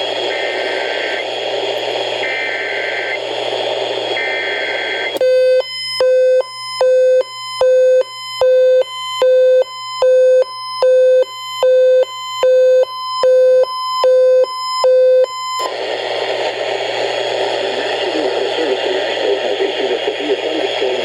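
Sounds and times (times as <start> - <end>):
broadcast static hiss: 0.0 - 5.2, 15.7 - 21.0.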